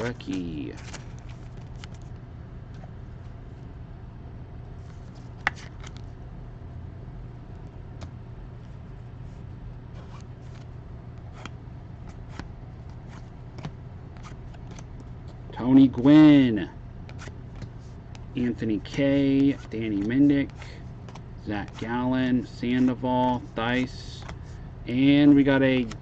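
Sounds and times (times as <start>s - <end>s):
cards being flipped through: 0.0s - 2.9s, 4.8s - 6.1s, 9.9s - 15.4s, 17.0s - 24.5s, 25.8s - 26.0s
steady low hum: 0.0s - 26.0s.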